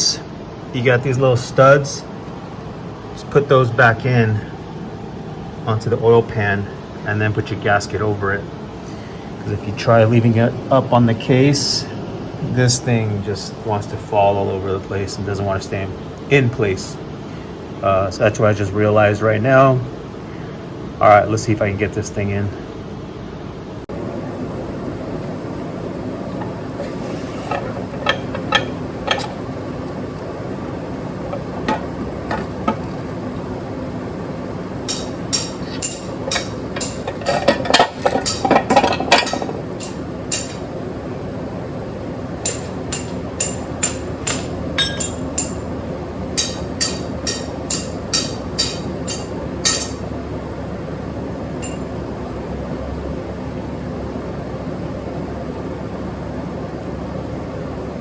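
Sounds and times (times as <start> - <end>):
steady background hum: 0.0 - 58.0
metal clinks and taps: 26.9 - 29.5, 31.3 - 33.0, 34.9 - 40.7, 42.4 - 45.7, 46.4 - 50.1, 51.6 - 51.9.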